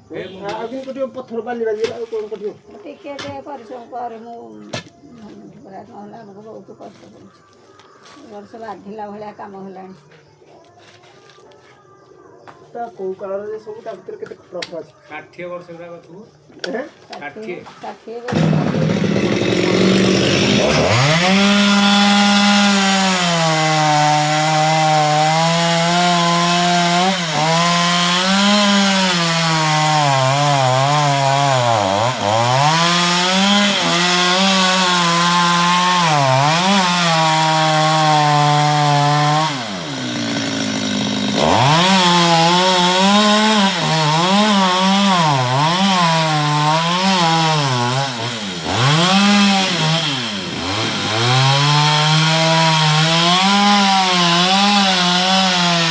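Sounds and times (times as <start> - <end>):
chainsaw cutting wood: 18.3 - 55.9.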